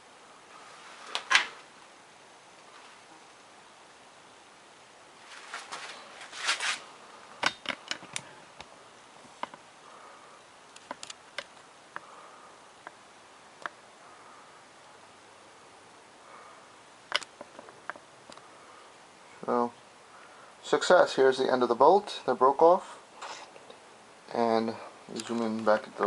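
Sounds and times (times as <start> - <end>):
rustle: 0.2 - 15.0.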